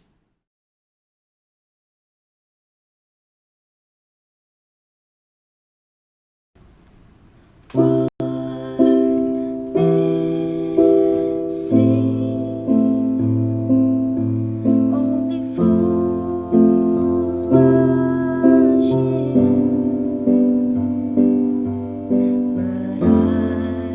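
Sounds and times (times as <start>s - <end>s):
gentle piano tune: 7.7s - 23.9s.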